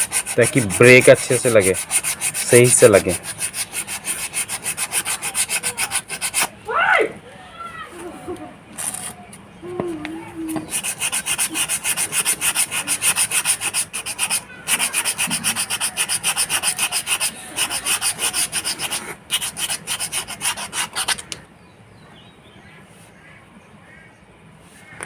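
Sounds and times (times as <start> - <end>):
sandpaper rubbing back and forth: 0.0 - 6.5, 8.8 - 9.2, 10.5 - 21.4.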